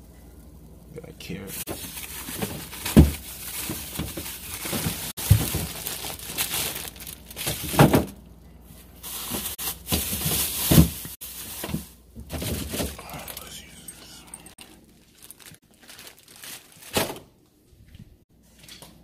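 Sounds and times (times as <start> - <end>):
plastic packaging crinkling: 1.5 - 8.2, 8.9 - 17.2
food items knocking: 1.7 - 8.2, 9.1 - 12.9.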